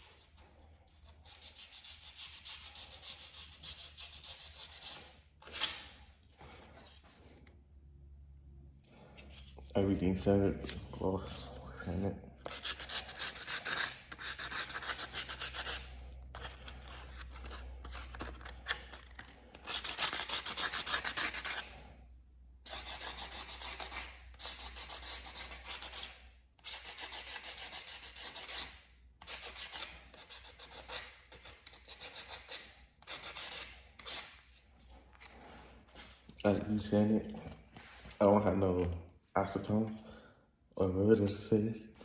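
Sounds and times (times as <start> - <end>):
sandpaper rasping on metal: 0.0 - 5.8, 12.5 - 18.8, 19.6 - 21.8, 22.7 - 34.4.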